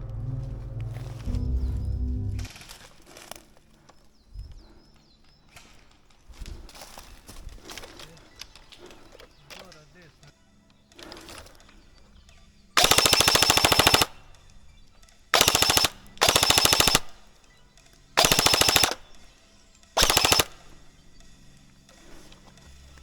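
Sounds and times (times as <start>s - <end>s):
airsoft gun rapid firing: 12.8s - 14.4s, 15.3s - 17.4s, 18.2s - 19.4s, 20.0s - 21.0s.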